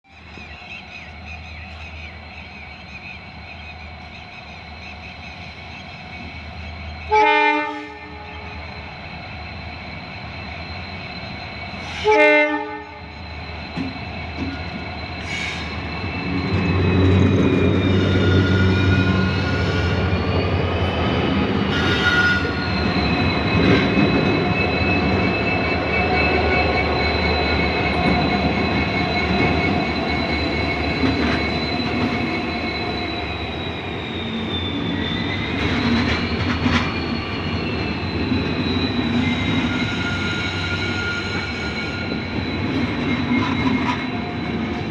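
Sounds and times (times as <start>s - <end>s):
train rumble: 0.1s - 44.9s
locomotive horn blast: 7.1s - 8.5s, 11.9s - 13.1s, 17.7s - 20.1s, 21.7s - 22.8s
high-pitched whine: 12.9s - 44.9s
rail clatter: 21.2s - 33.1s.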